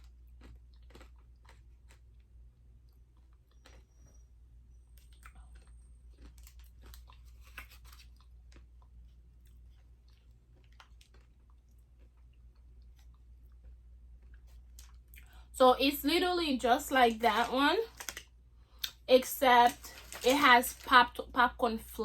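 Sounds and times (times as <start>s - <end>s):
person chewing with crunches: 0.0s - 15.5s.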